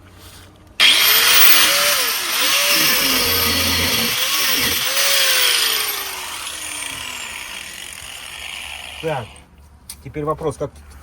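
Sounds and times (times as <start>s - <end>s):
power tool cutting metal: 0.8s - 9.4s.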